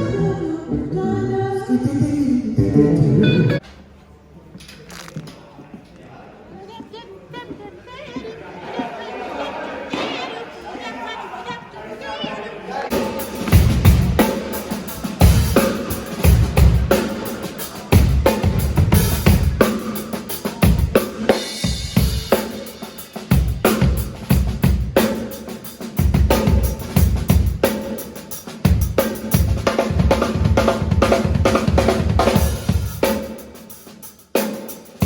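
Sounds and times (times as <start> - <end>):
drum kit playing busy beat: 12.9 - 35.0.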